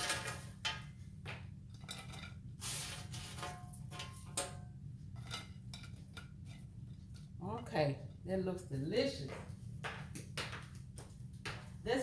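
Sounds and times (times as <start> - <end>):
dishes and utensils clinking: 0.0 - 1.0.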